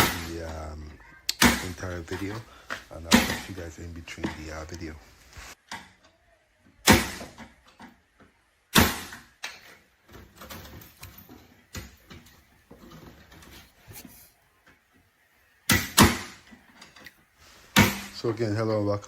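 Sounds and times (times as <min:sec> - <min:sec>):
handling noise: 0:10.5 - 0:14.4.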